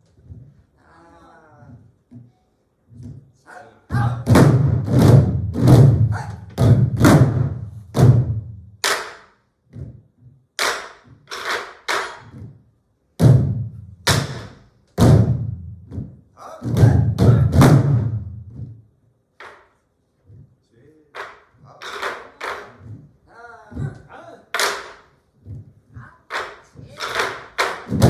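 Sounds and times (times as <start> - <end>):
deep drum thumps: 3.9 - 8.8, 13.2 - 14.4, 15.0 - 18.8.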